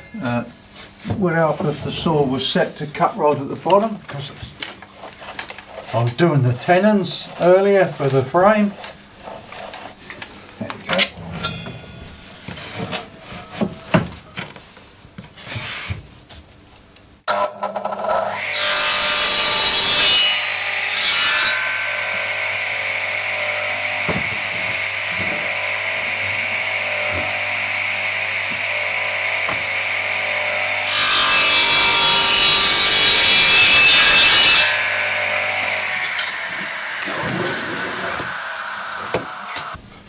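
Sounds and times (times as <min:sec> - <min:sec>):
saw cutting boards: 0:17.3 - 0:39.8
circular saw whine: 0:18.3 - 0:39.8.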